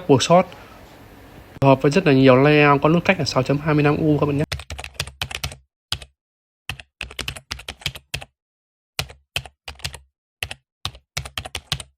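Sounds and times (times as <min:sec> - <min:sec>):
mechanical keyboard typing: 0:04.4 - 0:06.1, 0:06.7 - 0:08.3, 0:09.0 - 0:11.9.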